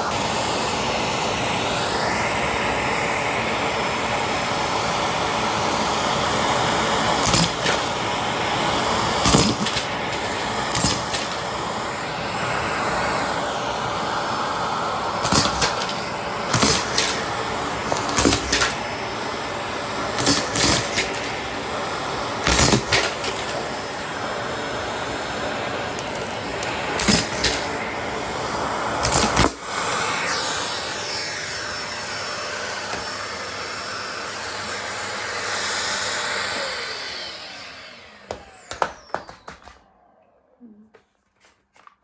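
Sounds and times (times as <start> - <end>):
vacuum cleaner running: 0.0 - 42.0
buttons clattering through hose: 7.2 - 8.0, 9.2 - 11.5, 15.2 - 17.3, 17.9 - 18.8, 20.2 - 21.4, 22.4 - 23.7, 26.0 - 27.8, 29.0 - 29.6.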